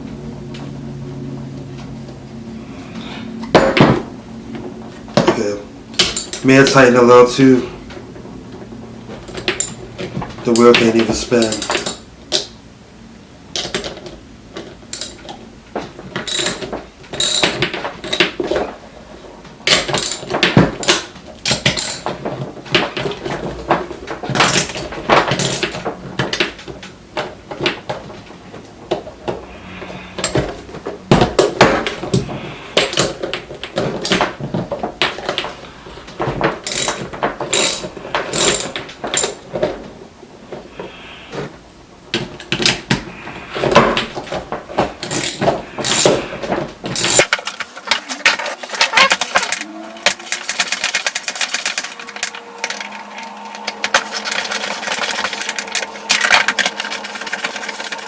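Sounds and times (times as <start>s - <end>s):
parts rattling in hands: 6.0s - 7.0s, 9.1s - 12.4s, 13.6s - 18.8s, 19.6s - 28.2s, 30.1s - 39.7s, 43.6s - 58.0s.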